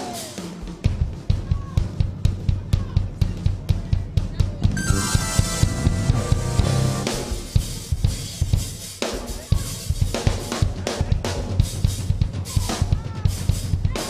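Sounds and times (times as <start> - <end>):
busy drum kit: 0.0 - 14.0
pitched instrument notes: 4.8 - 7.7.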